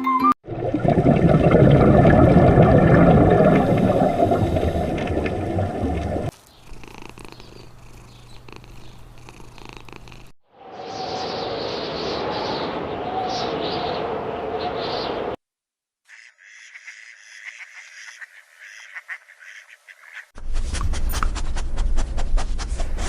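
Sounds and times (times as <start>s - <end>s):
animal rough purring rumble: 3.4s - 10.3s.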